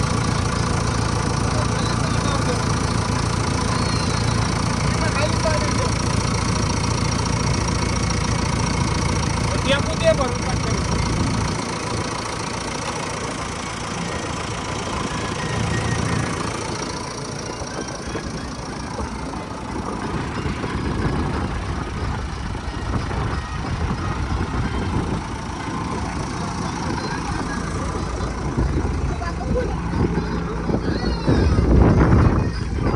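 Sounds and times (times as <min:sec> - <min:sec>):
diesel engine running: 0:00.0 - 0:32.9.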